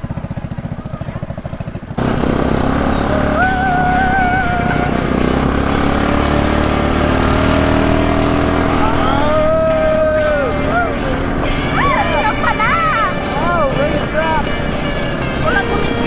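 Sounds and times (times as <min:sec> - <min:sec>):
atv engine: 0:00.0 - 0:16.0
wavering high tone: 0:02.8 - 0:05.4, 0:08.4 - 0:16.0.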